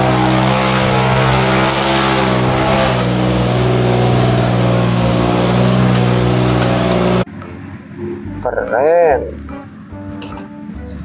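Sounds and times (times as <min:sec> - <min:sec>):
car engine running: 0:00.0 - 0:08.6.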